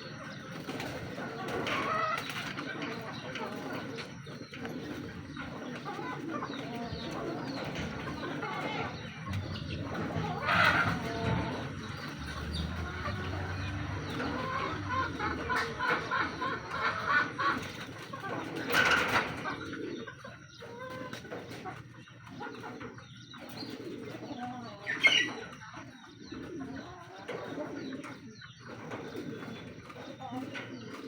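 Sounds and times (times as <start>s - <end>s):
pigeons cooing: 0.0s - 31.0s.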